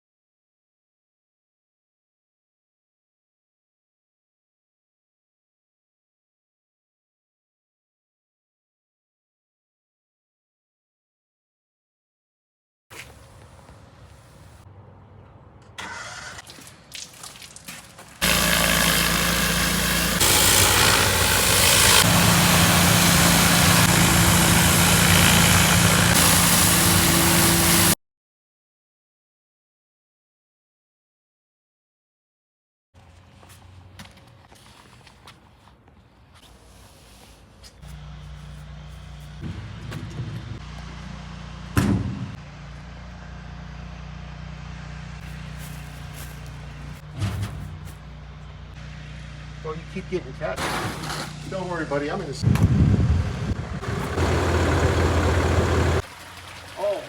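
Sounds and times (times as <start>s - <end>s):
loud hiss: 18.2s - 28.0s
small engine running: 18.2s - 28.0s, 37.8s - 47.2s, 47.8s - 57.0s
low mechanical hum: 37.7s - 56.7s.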